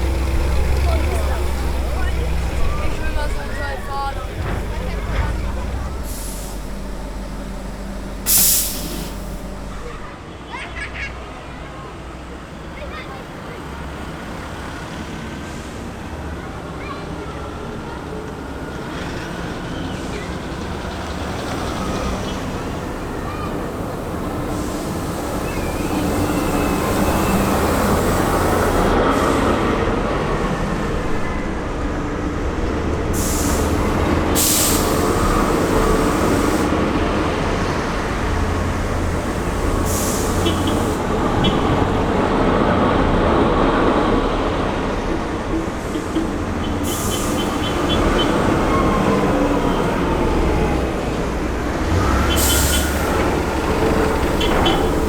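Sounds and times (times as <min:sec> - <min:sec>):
diesel engines rumbling: 0:00.0 - 0:55.0
short bursts of hissing: 0:05.9 - 0:09.8, 0:33.2 - 0:36.7.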